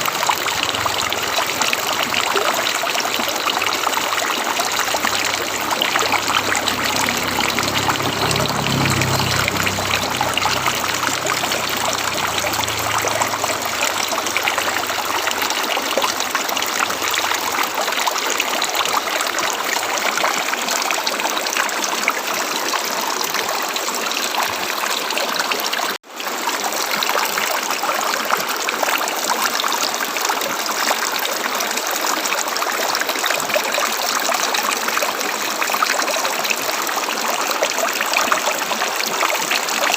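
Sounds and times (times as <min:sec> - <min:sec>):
low rumble: 0:00.0 - 0:17.7
river water flowing: 0:00.0 - 0:39.9.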